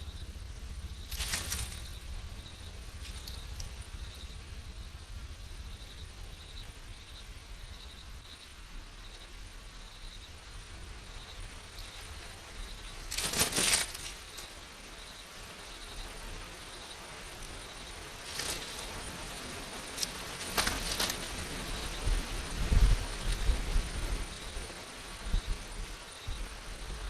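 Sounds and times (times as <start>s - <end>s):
faint insect chirps: 0.0s - 27.0s
loud rustle: 1.0s - 2.2s, 11.9s - 14.8s, 17.3s - 24.8s.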